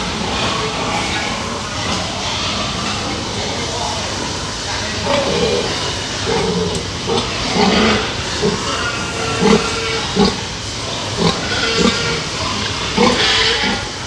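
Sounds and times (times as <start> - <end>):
pigs grunting: 0.0 - 14.0
steady hiss: 0.0 - 14.0.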